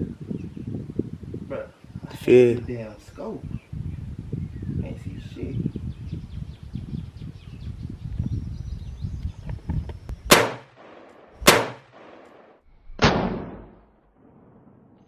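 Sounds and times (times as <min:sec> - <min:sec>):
pistol gunshots with echo: 0:10.3 - 0:13.9.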